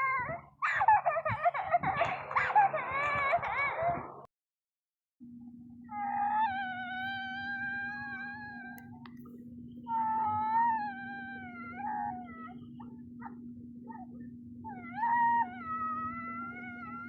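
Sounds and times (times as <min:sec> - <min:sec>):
wailing yowls: 0:00.0 - 0:04.1, 0:05.9 - 0:09.0, 0:09.9 - 0:17.0
steady low hum: 0:00.0 - 0:04.3, 0:05.2 - 0:17.0.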